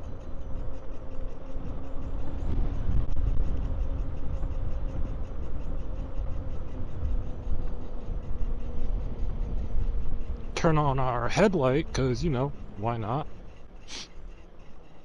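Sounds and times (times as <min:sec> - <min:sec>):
faint electric motor whine: 0:00.0 - 0:15.0
wind and road rumble: 0:00.0 - 0:15.0.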